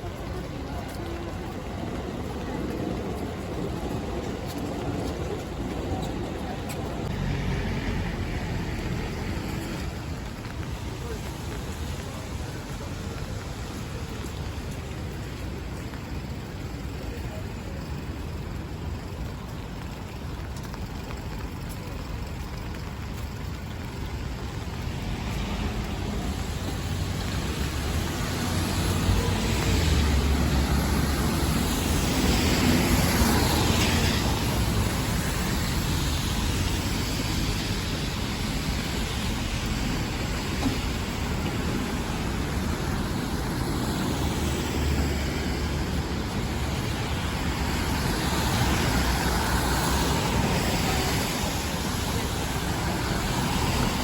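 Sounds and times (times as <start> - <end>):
rainy street hiss: 0.0 - 54.0
tyres swishing on wet road: 0.0 - 54.0.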